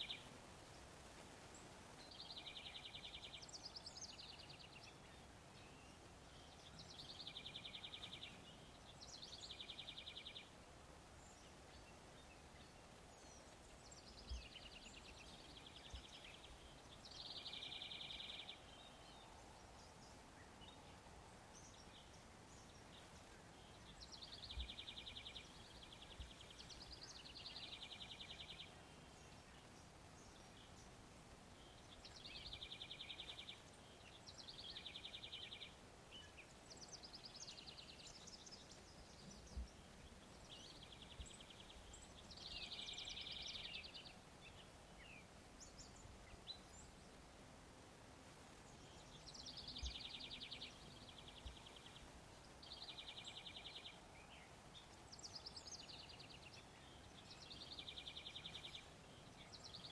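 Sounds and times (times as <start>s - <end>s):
faint outdoor background noise: 0.0s - 59.9s
small bird singing with trill: 11.2s - 19.3s, 31.6s - 47.0s, 48.7s - 59.9s.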